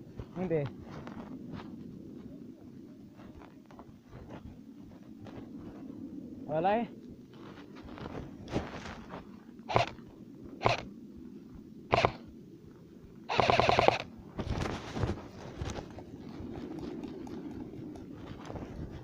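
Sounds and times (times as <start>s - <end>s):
airsoft gun firing: 9.7s - 10.0s, 10.6s - 10.8s, 11.9s - 12.2s, 13.3s - 14.1s.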